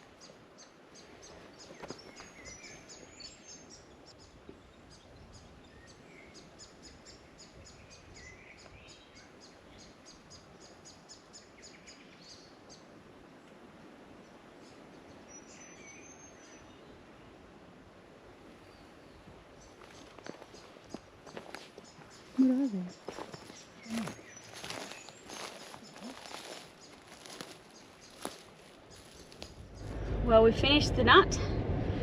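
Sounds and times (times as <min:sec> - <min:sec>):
faint bird chirps: 0:21.8 - 0:30.0.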